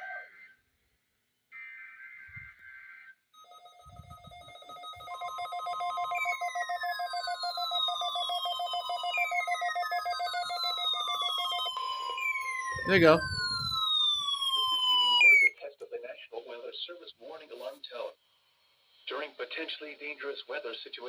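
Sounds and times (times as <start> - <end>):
steady alarm tone: 3.4 - 15.5
falling pitch sweeps: 11.8 - 13.9
low pulsing tone: 12.8 - 13.8.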